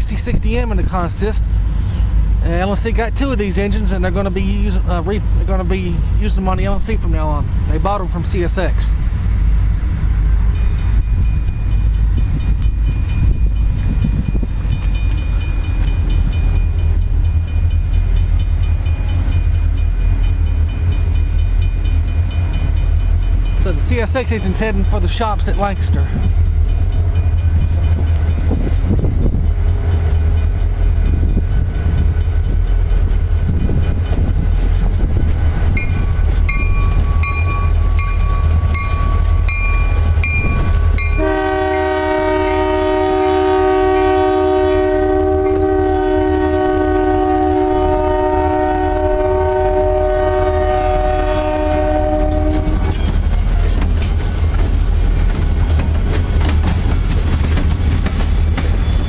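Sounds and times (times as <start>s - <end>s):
diesel locomotives rumbling: 0.0s - 59.0s
locomotive bell ringing: 10.4s - 28.8s, 29.6s - 46.2s
train air horn blast: 41.0s - 52.9s.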